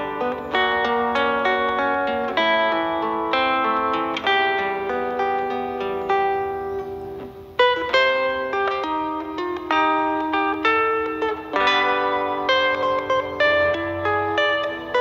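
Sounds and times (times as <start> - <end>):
acoustic guitar music: 0.0 - 15.0.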